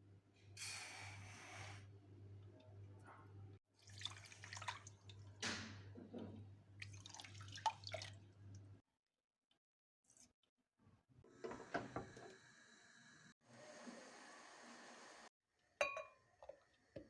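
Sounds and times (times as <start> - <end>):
water pouring and dripping: 3.8 - 8.8.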